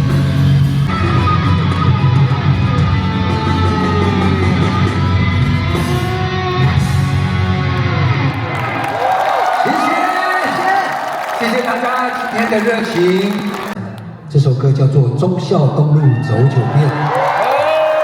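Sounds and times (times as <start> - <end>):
live rock band playing: 0.0 - 8.6
strummed electric guitar: 0.0 - 8.6.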